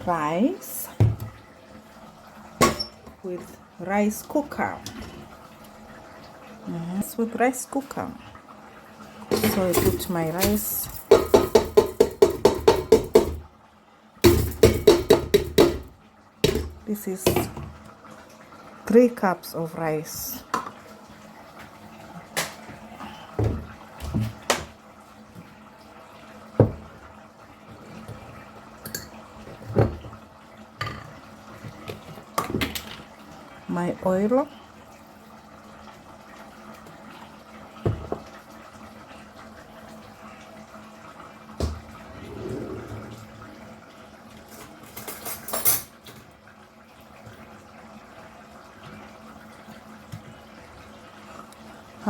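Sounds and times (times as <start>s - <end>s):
faint watery sound: 0.0s - 52.0s
utensils clattering against a pot: 2.6s - 3.1s, 9.3s - 13.4s, 14.2s - 17.7s, 44.5s - 46.2s.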